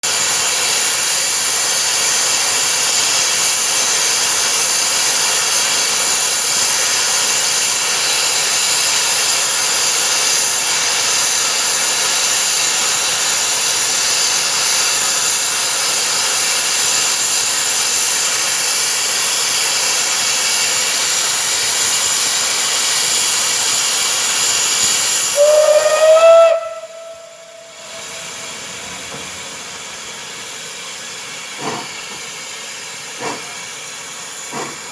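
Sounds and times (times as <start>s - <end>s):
steam locomotive hissing: 0.0s - 34.9s
steam whistle: 24.4s - 28.9s.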